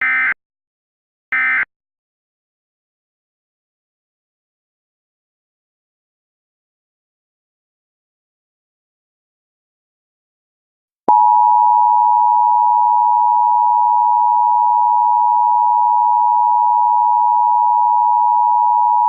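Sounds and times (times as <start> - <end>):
two-tone alarm: 0.0 - 0.4, 1.3 - 1.7, 11.1 - 19.0.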